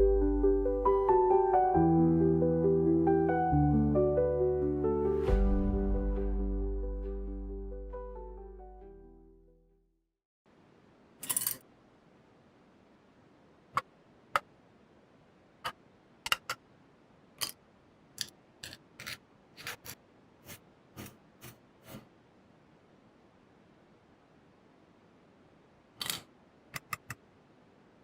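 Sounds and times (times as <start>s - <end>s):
faint steady hiss: 10.5s - 18.6s, 19.3s - 28.0s.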